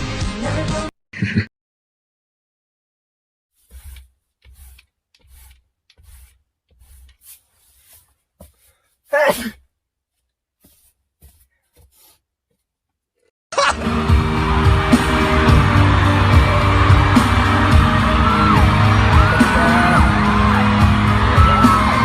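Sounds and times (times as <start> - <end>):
person sneezing: 9.1 - 9.7.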